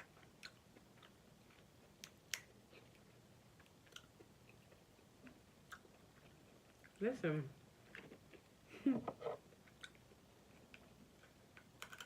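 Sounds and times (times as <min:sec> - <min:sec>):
crab shells cracking: 0:11.6 - 0:12.0.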